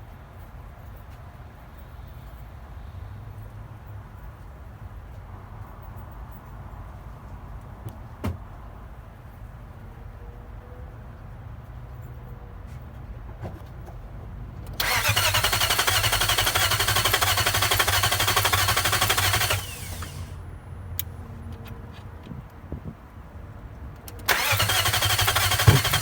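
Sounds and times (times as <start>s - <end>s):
engine cranking on starter: 14.7s - 20.4s, 24.0s - 26.0s.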